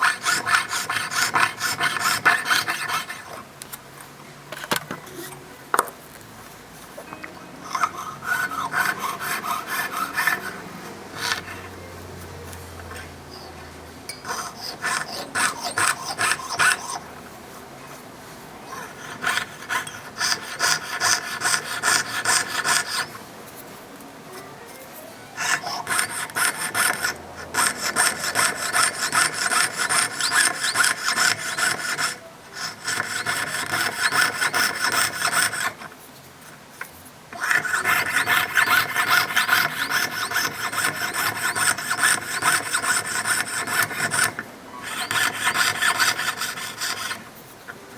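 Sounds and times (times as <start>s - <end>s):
hand saw cutting metal sheet: 0.0s - 3.4s, 7.7s - 11.7s, 14.2s - 17.0s, 18.8s - 23.2s, 25.4s - 35.9s, 37.4s - 47.3s.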